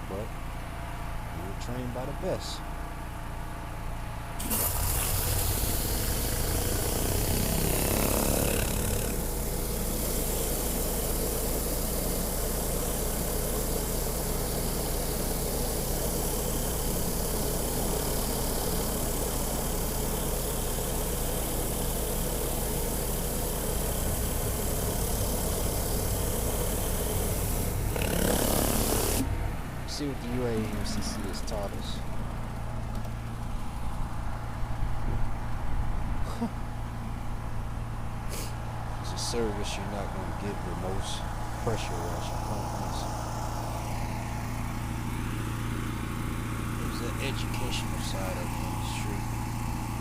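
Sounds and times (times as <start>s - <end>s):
pressure washer engine humming: 0.0s - 35.1s, 36.3s - 50.0s
high-pressure water spray hissing: 4.4s - 29.3s.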